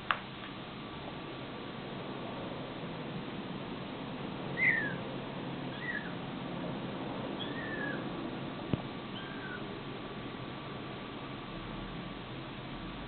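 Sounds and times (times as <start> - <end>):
steady hiss: 0.0 - 13.0
kitten mewing: 9.2 - 9.6.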